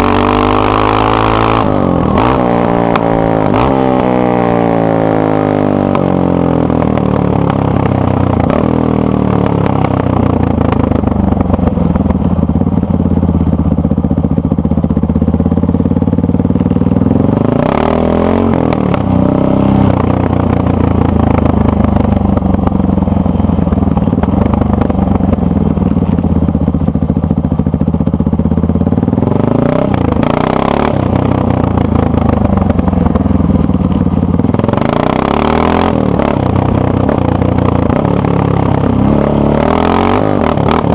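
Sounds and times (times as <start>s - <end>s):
engine revving: 0.0s - 7.6s, 17.3s - 19.9s, 29.3s - 32.9s, 34.4s - 40.9s
motorcycle engine idling: 0.0s - 17.6s, 18.4s - 39.3s.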